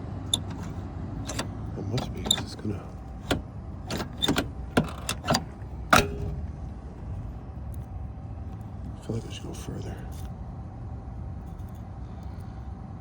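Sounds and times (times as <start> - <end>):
steady low hum: 0.0 - 13.0
metallic clicks in lock: 0.3 - 6.5.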